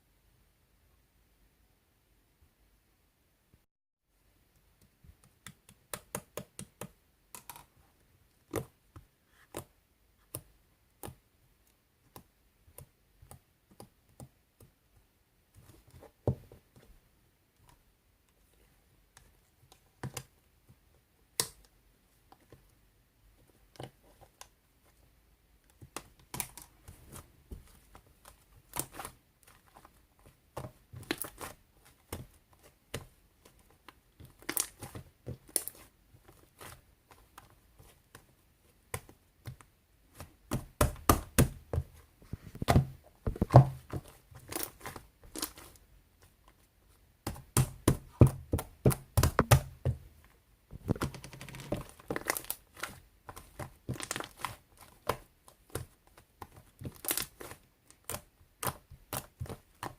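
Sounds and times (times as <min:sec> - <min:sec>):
crinkling and rustling: 0:25.7 - 0:59.9.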